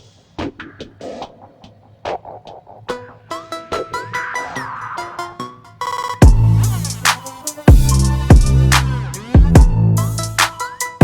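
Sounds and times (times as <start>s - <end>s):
electronic music with heavy bass: 2.3s - 11.0s.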